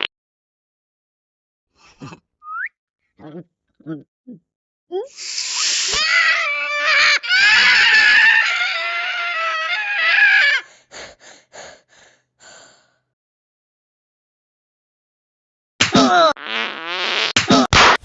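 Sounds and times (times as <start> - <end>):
high-pitched cartoon voice screaming: 5.1 - 10.6.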